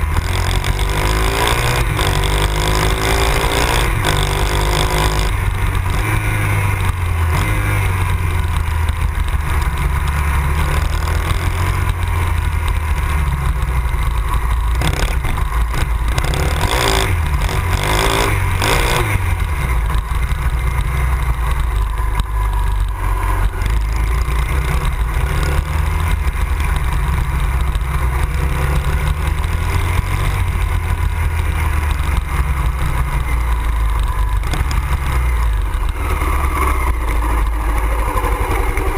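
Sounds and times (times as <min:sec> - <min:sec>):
motorcycle engine running: 0:00.0 - 0:38.9
rushes of noise: 0:00.0 - 0:38.9.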